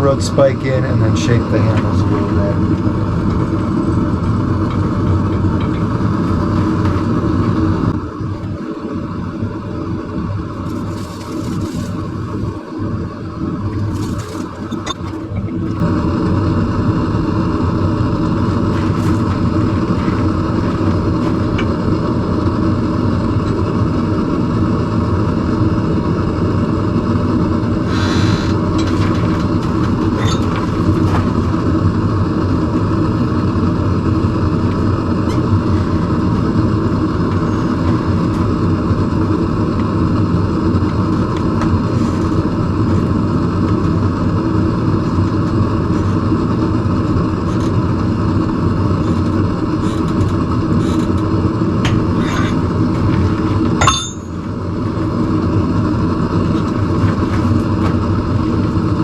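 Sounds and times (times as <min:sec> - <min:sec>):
constant hum: 0:00.0 - 0:59.0
forge roaring: 0:00.0 - 0:59.0
metal clink: 0:53.8 - 0:54.4.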